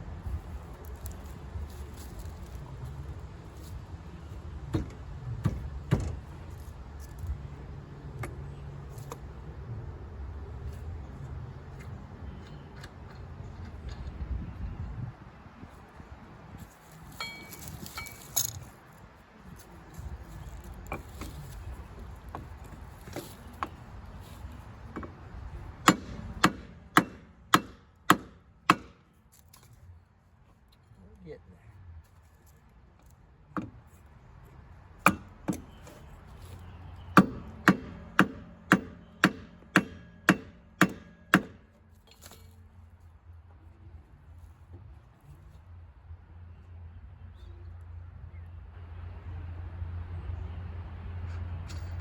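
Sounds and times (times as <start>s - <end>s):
tools and metal parts clinking: 17.1s - 18.9s, 41.9s - 42.6s.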